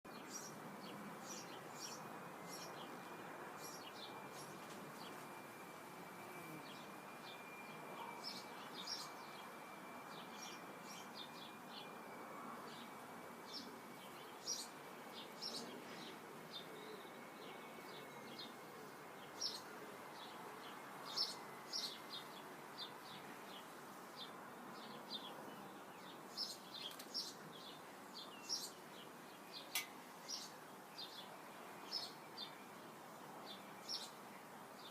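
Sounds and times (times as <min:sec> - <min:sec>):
small birds chirping: 0:00.1 - 0:05.6, 0:06.4 - 0:12.0, 0:12.7 - 0:34.9
thin steady tone: 0:00.1 - 0:26.8
faint background hiss: 0:00.1 - 0:34.9.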